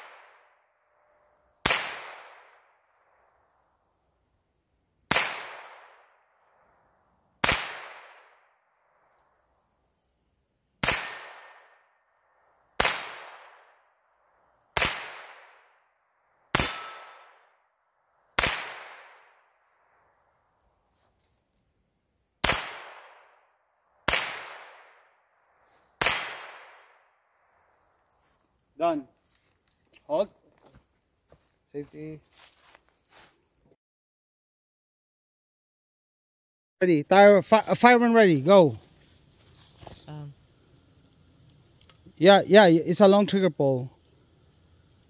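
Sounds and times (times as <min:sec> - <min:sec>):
rifle shots: 0:01.6 - 0:02.7, 0:05.1 - 0:06.1, 0:07.4 - 0:08.5, 0:10.8 - 0:11.8, 0:12.8 - 0:13.8, 0:14.8 - 0:15.7, 0:18.4 - 0:19.4, 0:22.4 - 0:23.4, 0:24.0 - 0:25.1, 0:26.0 - 0:27.0.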